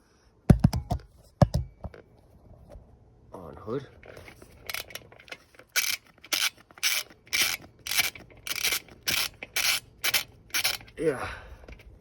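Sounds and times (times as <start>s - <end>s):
ratchet wrench clicking: 4.6s - 5.0s, 5.7s - 10.9s.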